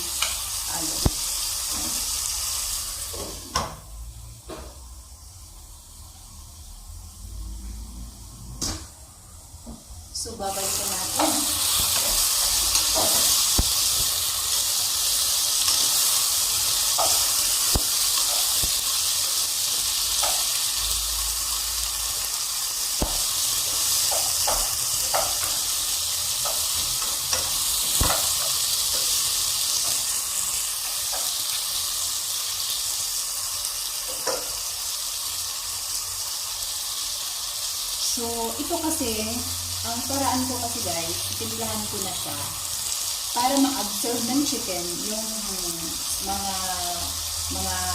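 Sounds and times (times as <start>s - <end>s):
chicken frying in oil: 0.0s - 3.2s, 10.4s - 47.9s.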